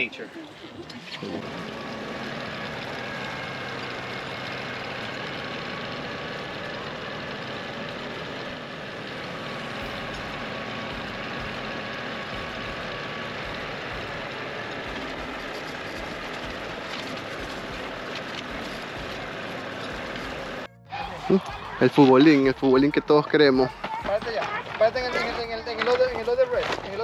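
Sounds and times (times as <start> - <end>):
faint steady whine: 0.0 - 21.7
ride vehicle engine running: 0.0 - 27.0
low rumble: 9.1 - 23.0.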